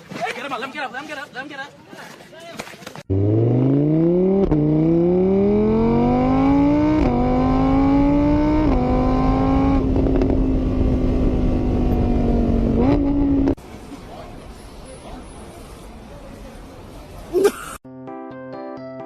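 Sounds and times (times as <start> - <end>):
vehicle engine accelerating through gears: 3.1 - 13.6.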